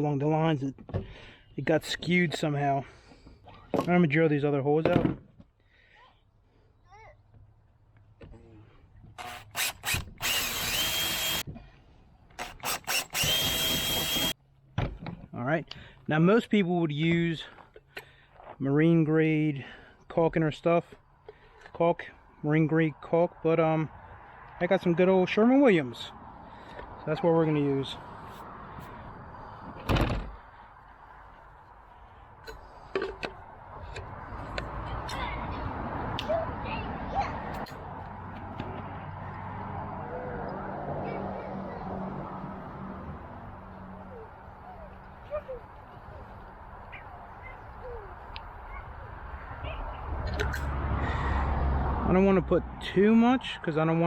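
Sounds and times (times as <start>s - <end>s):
power drill motor whine: 9.2s - 11.4s, 12.4s - 14.4s
loud thump: 29.7s - 30.4s.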